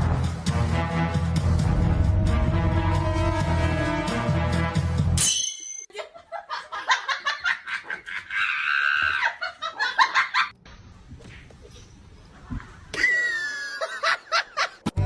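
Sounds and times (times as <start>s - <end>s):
music: 0.0s - 5.2s
person laughing: 5.9s - 10.5s, 12.9s - 14.8s.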